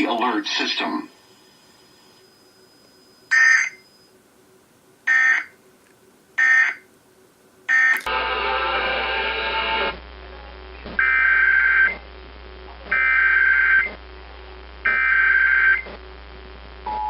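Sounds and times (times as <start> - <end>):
dull data burst: 3.2 - 4.1
buzzy warbling data tones: 3.3 - 3.9.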